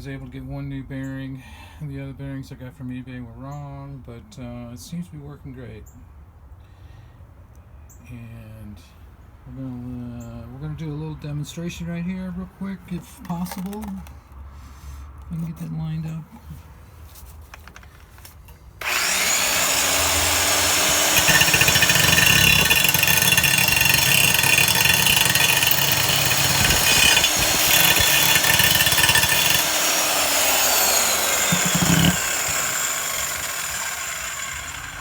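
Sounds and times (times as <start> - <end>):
grinder whining: 18.8 - 35.0.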